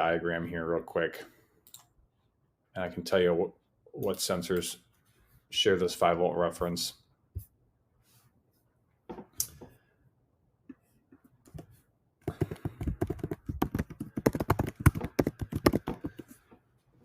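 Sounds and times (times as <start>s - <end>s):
computer keyboard typing: 12.2s - 16.3s.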